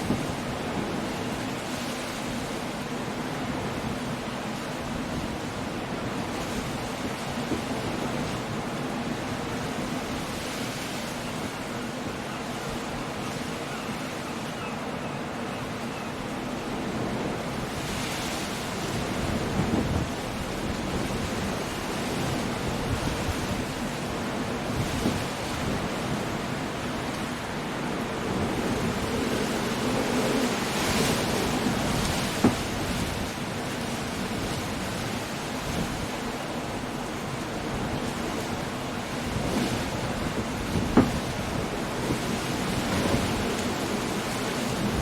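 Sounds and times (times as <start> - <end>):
wind: 0.0 - 45.0
rain: 15.2 - 45.0
surf breaking: 24.6 - 35.0, 39.2 - 45.0.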